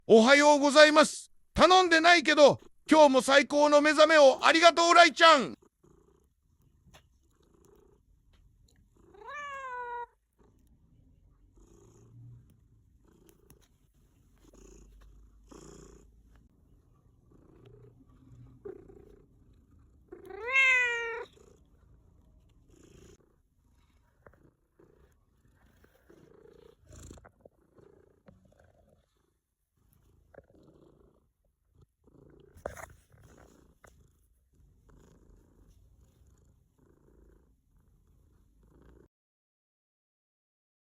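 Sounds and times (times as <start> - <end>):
cat purring: 5.5 - 39.1
cat meowing: 9.1 - 10.2, 20.2 - 21.4.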